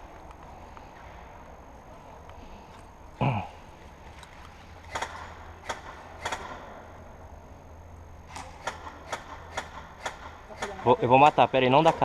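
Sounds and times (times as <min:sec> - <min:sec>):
airsoft gun shots clicking: 0:04.8 - 0:06.7, 0:08.3 - 0:12.0.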